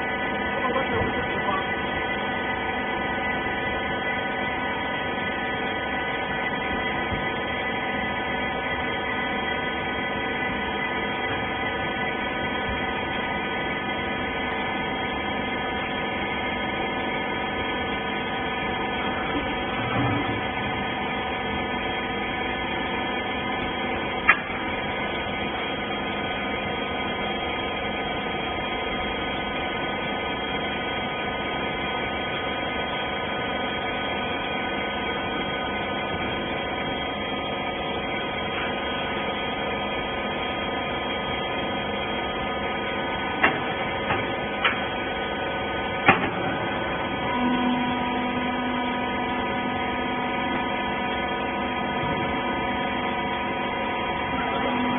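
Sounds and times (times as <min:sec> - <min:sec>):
hydraulic baler humming: 0:00.0 - 0:54.9.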